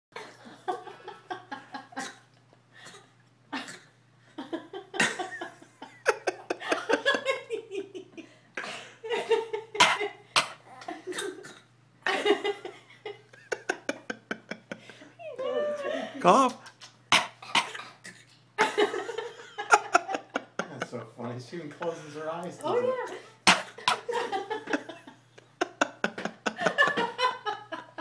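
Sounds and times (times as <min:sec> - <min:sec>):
laughter: 0:00.2 - 0:02.2, 0:04.4 - 0:08.4, 0:09.0 - 0:10.2, 0:12.0 - 0:15.0, 0:18.6 - 0:21.0, 0:23.8 - 0:28.0.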